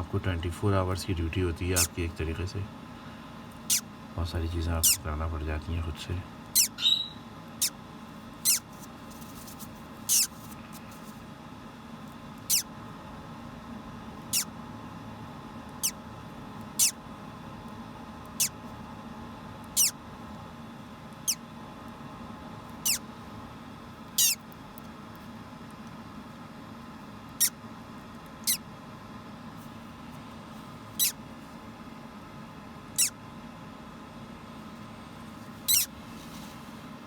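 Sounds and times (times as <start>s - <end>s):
parrot chick peeping: 3.6s - 3.8s, 4.8s - 5.0s, 6.5s - 7.8s, 8.4s - 8.7s, 10.0s - 10.4s, 12.4s - 12.7s, 14.2s - 14.5s, 15.7s - 16.0s, 16.6s - 17.0s, 18.2s - 18.6s, 19.6s - 20.0s, 21.2s - 21.4s, 22.7s - 23.1s, 24.1s - 24.5s, 27.3s - 27.6s, 28.3s - 28.6s, 31.0s - 31.2s, 32.9s - 33.2s, 35.6s - 36.0s.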